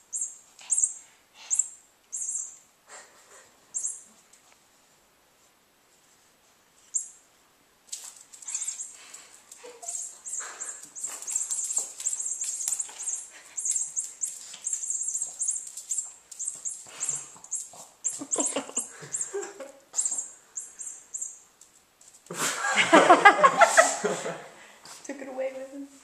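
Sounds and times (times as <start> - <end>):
cat toy rattling and jingling: 8.0 - 18.5.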